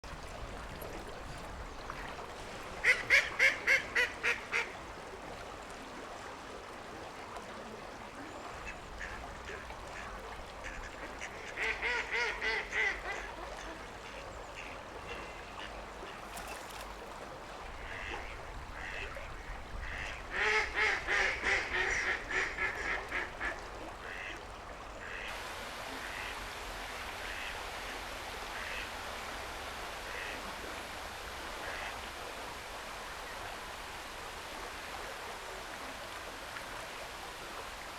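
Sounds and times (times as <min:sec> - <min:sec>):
steady background hiss: 0:24.9 - 0:37.9
duck quacking: 0:30.1 - 0:30.4.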